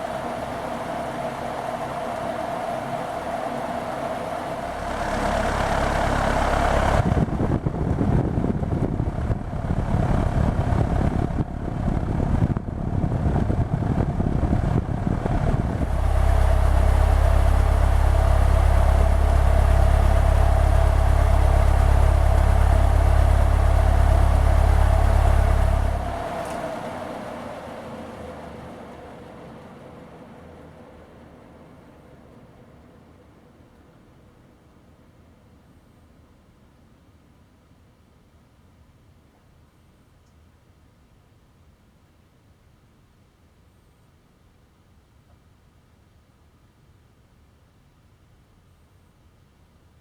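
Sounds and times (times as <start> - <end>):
fan airflow rushing: 0.0 - 33.1
ceiling fan motor hum: 0.0 - 36.8.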